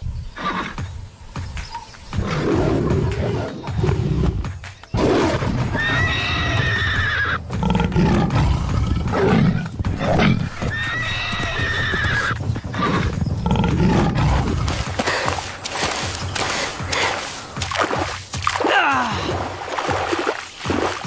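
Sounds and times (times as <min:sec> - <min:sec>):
horse whinnying: 0:05.0 - 0:14.5.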